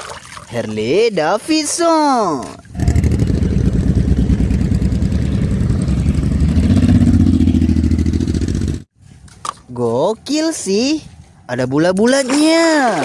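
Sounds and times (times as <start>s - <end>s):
motorcycle engine running: 2.8s - 8.9s.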